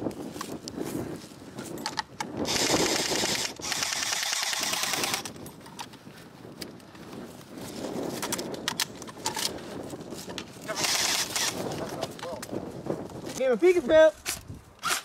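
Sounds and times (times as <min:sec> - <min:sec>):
airsoft gun firing full auto: 0:02.5 - 0:05.3.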